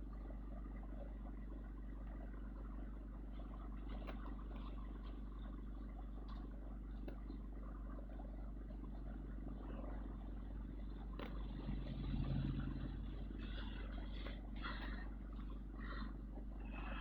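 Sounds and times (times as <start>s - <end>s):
motor vehicle humming: 9.1s - 17.0s.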